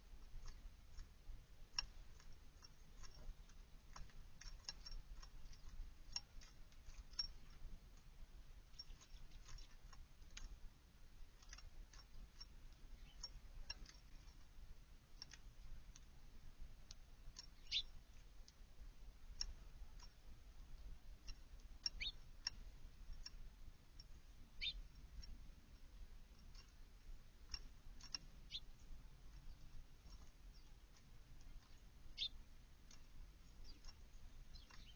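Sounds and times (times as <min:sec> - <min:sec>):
small sharp clicks: 0:00.0 - 0:10.6, 0:11.2 - 0:18.7, 0:19.3 - 0:34.9
faint bird chirps: 0:01.7 - 0:07.7, 0:08.6 - 0:10.5, 0:11.4 - 0:14.6, 0:16.9 - 0:18.3, 0:19.4 - 0:23.4, 0:24.0 - 0:26.8, 0:27.5 - 0:34.9.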